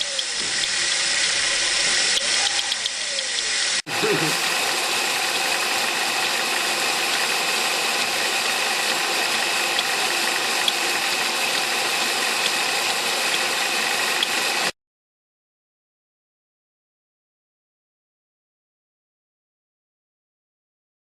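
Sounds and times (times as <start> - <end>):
sharp irregular engine clicks: 0.0 - 3.8, 4.8 - 14.7.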